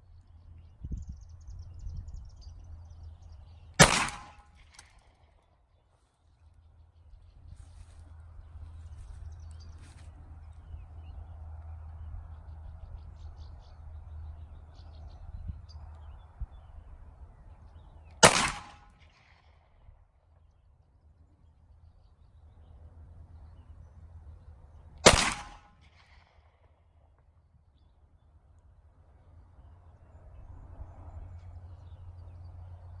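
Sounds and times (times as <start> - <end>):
pistol shots with echo: 3.8 - 4.8, 18.2 - 19.1, 25.0 - 26.2.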